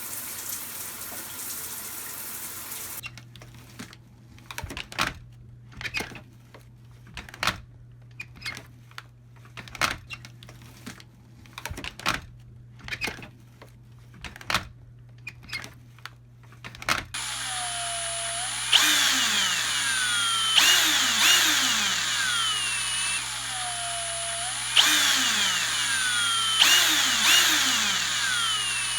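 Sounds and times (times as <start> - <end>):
motorized whirring sweeping down: 17.2 - 28.9.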